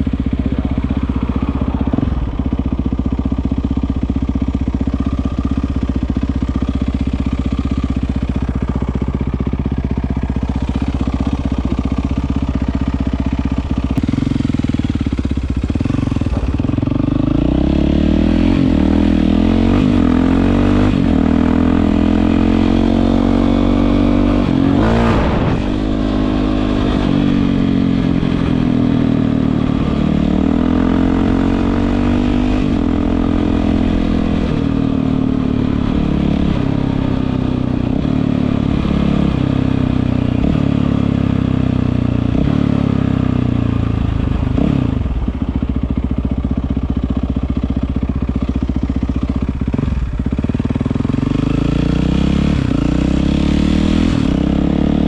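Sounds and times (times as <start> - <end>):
motorcycle engine revving: 0.0 - 55.0.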